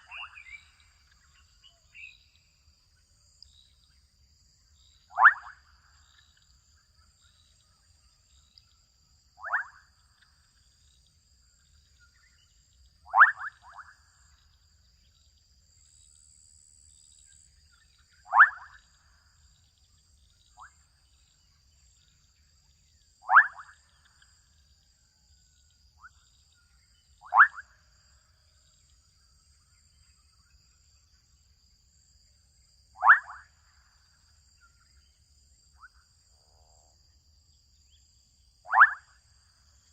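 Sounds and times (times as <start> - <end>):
frogs calling: 0.0 - 3.6, 4.7 - 7.6, 9.3 - 11.0, 11.7 - 15.4, 17.3 - 19.6, 23.2 - 24.7, 25.9 - 28.4, 32.9 - 35.0, 37.8 - 39.9.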